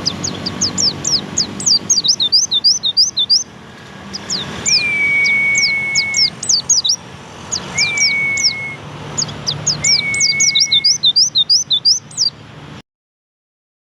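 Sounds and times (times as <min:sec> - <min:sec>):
songbird twittering: 0:00.0 - 0:12.5
low whistled tone: 0:04.7 - 0:07.0, 0:07.6 - 0:08.8, 0:09.7 - 0:11.8.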